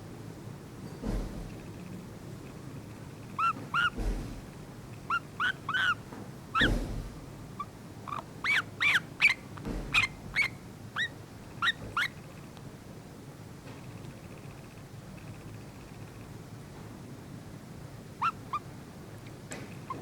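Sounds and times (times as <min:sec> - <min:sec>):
bulbul chirping softly: 0:02.9 - 0:04.0, 0:04.9 - 0:06.0, 0:07.6 - 0:12.5.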